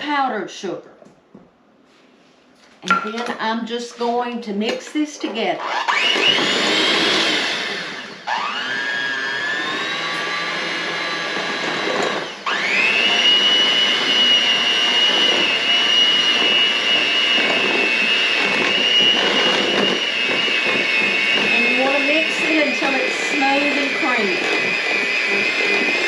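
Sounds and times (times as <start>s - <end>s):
electric hand mixer whining: 5.4s - 26.0s.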